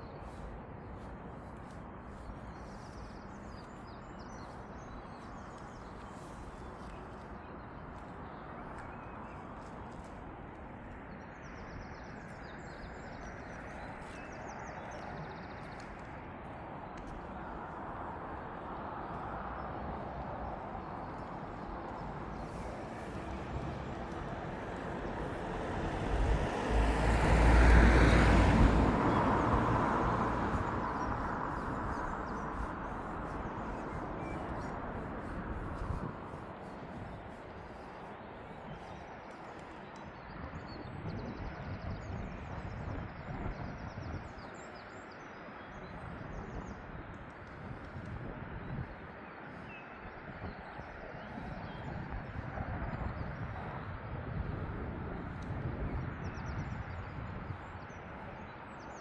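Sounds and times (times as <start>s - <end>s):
vehicle passing by: 21.2s - 36.3s.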